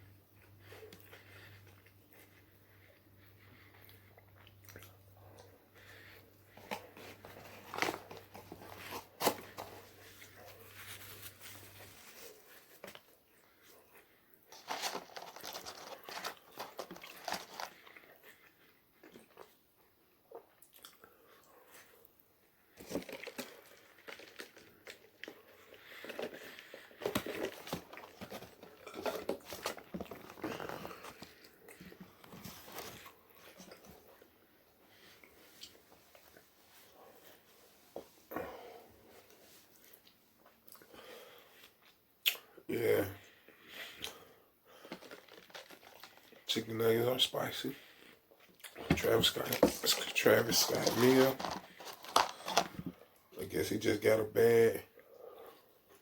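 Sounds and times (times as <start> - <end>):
crunching and chewing food: 0.0 - 37.4, 43.2 - 53.4
paper rustling: 14.5 - 17.8, 48.9 - 52.9
person biting and chewing food: 26.0 - 34.2.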